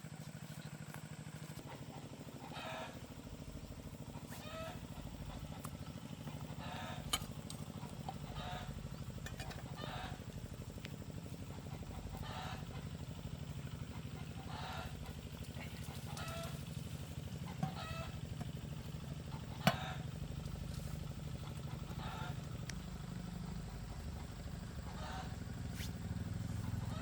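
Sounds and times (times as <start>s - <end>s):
low engine hum: 0.0s - 27.0s
geese honking: 14.1s - 16.7s, 21.4s - 22.4s.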